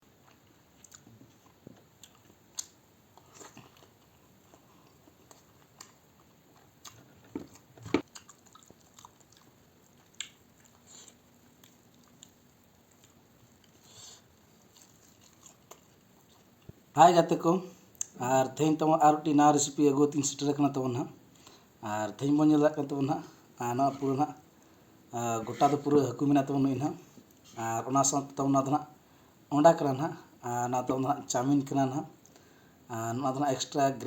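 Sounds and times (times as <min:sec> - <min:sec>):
person chewing food: 0:00.2 - 0:16.9.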